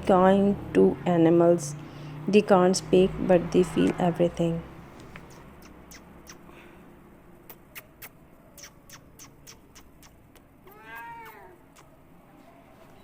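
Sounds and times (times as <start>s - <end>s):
cat meowing: 10.6s - 11.6s.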